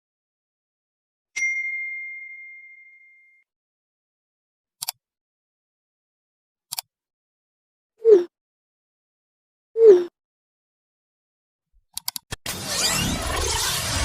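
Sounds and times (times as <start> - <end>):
bright bell-like ding: 1.4 - 3.4
quick pair of clicks: 4.8 - 5.0, 11.9 - 12.4.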